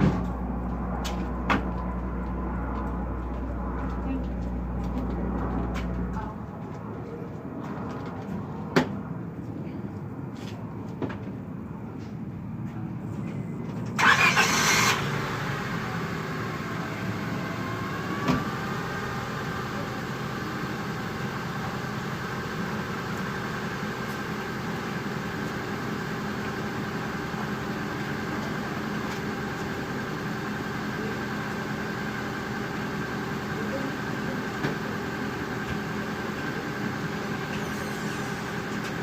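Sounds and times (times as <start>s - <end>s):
car engine starting and idling: 13.6s - 39.0s.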